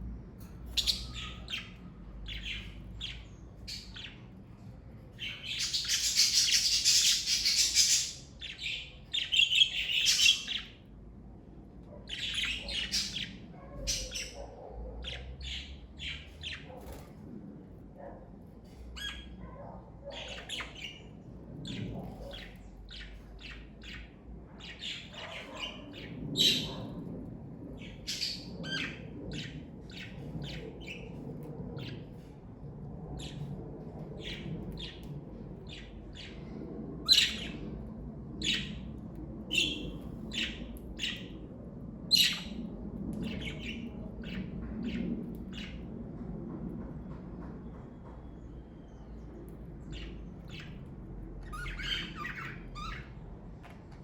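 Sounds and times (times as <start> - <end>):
budgerigars chirping: 5.5 - 10.7, 51.4 - 53.1.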